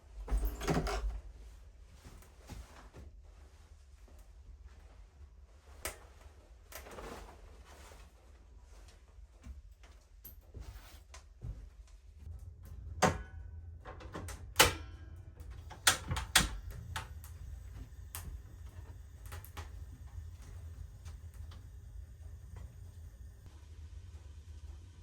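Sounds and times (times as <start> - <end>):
low steady rumble: 11.5 - 25.0.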